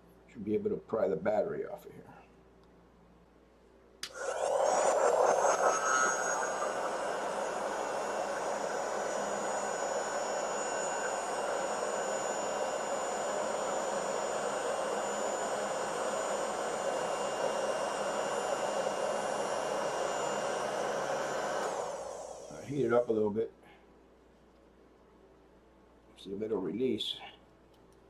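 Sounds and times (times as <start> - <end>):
heat gun blowing: 4.0 - 23.1.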